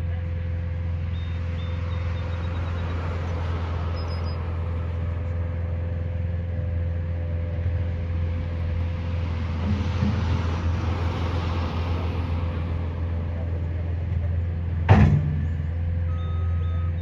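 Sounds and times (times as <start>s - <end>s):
steady low rumble: 3.3s - 16.1s.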